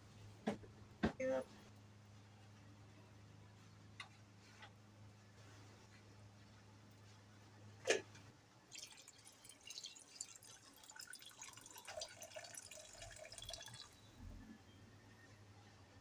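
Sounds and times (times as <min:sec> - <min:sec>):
pot of rice bubbling: 0:08.7 - 0:14.1.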